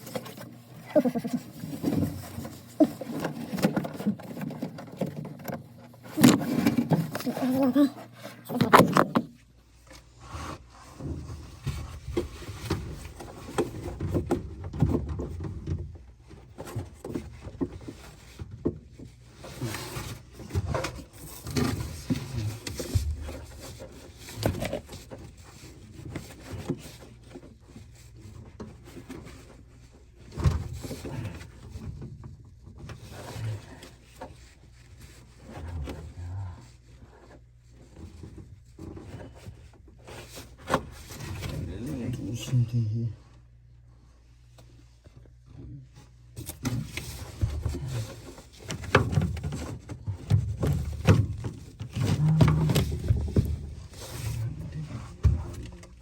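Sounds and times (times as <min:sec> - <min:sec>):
hands knocking and scraping: 0:08.3 - 0:09.5.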